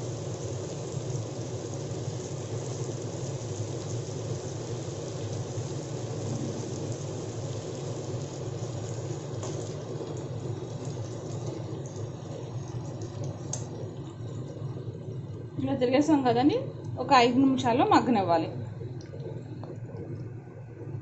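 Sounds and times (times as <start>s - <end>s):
fish sizzling in oil: 0.0s - 20.8s
constant low hum: 5.1s - 21.0s.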